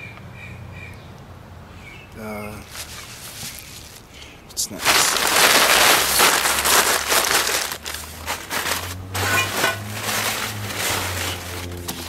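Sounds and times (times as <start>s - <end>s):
packaging rustling and crinkling: 2.6s - 4.1s, 4.7s - 12.0s.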